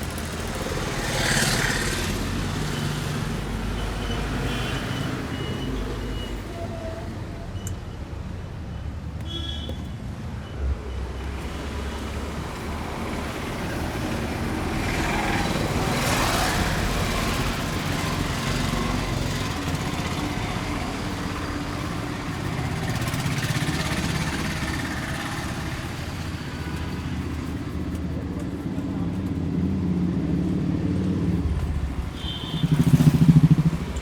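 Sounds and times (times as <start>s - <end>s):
vehicle engines running: 0.0s - 9.2s, 10.0s - 34.0s.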